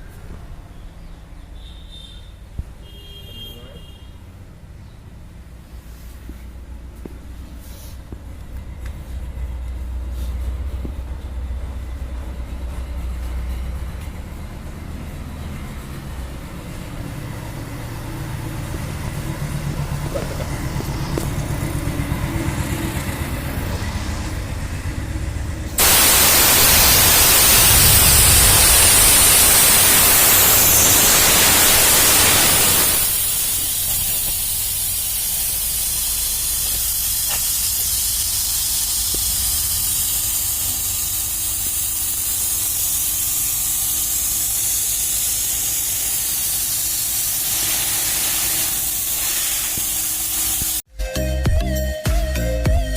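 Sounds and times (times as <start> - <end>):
hiss of escaping air: 7.5 - 8.2, 25.7 - 50.8
air compressor motor drone: 8.0 - 50.8.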